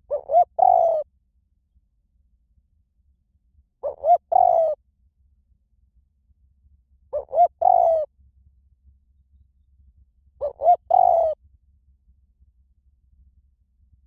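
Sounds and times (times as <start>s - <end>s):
dove cooing: 0.0s - 1.0s, 3.8s - 4.8s, 7.1s - 8.1s, 10.4s - 11.4s.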